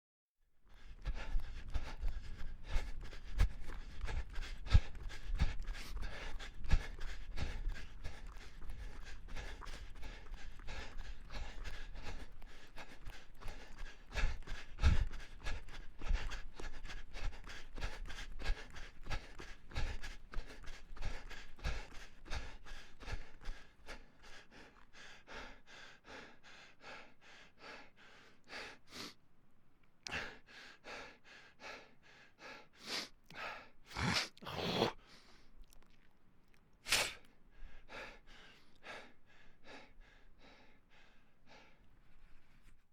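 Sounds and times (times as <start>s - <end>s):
person panting: 0.7s - 29.2s, 30.1s - 35.5s, 36.9s - 42.7s
person gasping: 32.5s - 35.4s.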